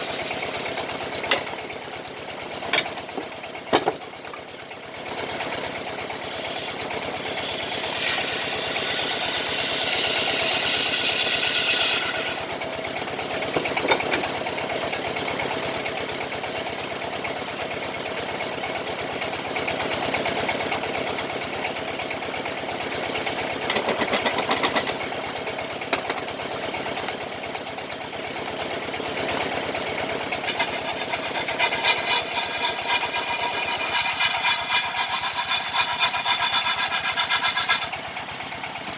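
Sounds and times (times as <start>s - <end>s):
chisel chattering on wood lathe: 0.0s - 4.4s, 5.0s - 16.6s, 23.5s - 25.3s, 30.0s - 38.9s
lathe motor hum: 6.0s - 15.6s, 30.4s - 38.9s.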